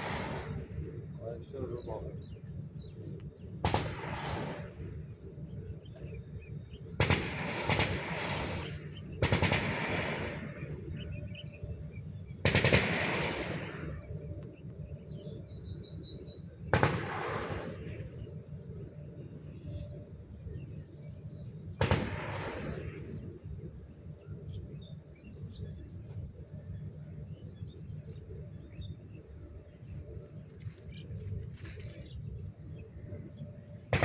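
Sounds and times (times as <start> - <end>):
faint bird chirps: 14.0 - 21.5.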